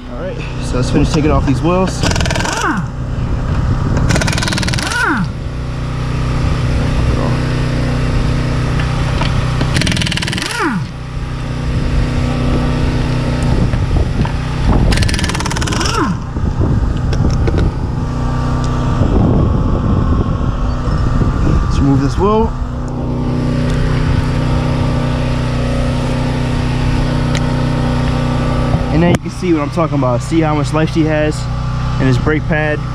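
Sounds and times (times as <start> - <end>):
steady motor hum: 0.0 - 32.9
pneumatic impact wrench whining: 1.8 - 18.8.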